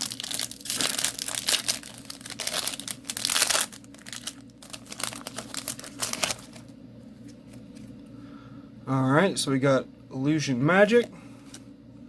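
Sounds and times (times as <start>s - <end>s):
foil wrapper crinkling: 0.0s - 6.7s.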